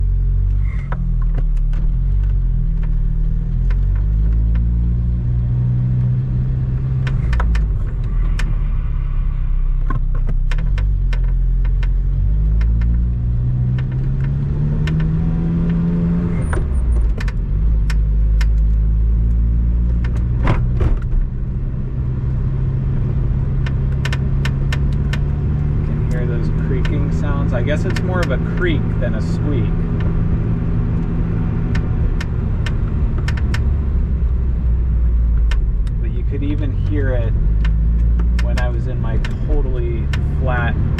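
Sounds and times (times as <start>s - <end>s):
car engine running: 0.0s - 40.9s
dashboard creaks: 6.9s - 8.6s.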